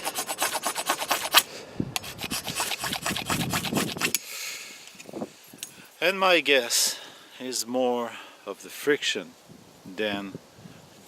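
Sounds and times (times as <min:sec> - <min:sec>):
machete scraping ferrocerium rod: 0:00.0 - 0:04.2.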